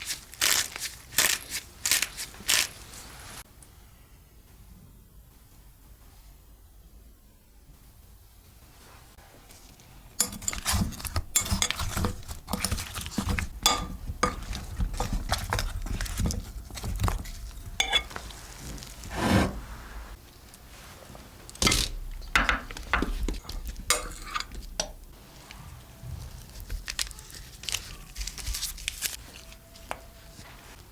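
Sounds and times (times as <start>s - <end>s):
utensils clinking against cookware: 10.2s - 18.9s, 21.6s - 25.1s.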